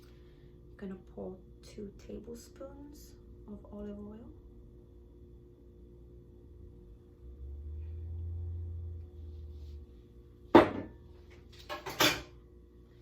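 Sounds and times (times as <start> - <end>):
low hum: 0.0 - 11.4
kitchenware clanking on counter: 11.7 - 12.3.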